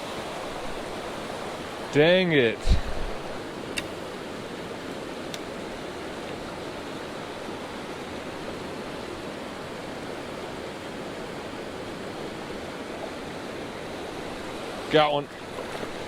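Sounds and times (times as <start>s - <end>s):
creek water rushing: 0.0s - 16.0s.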